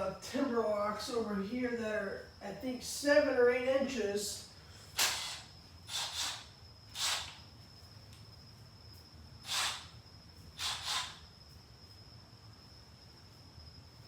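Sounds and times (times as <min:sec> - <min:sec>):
faint high-pitched whine: 0:00.0 - 0:14.0
sharp click: 0:05.0 - 0:05.4.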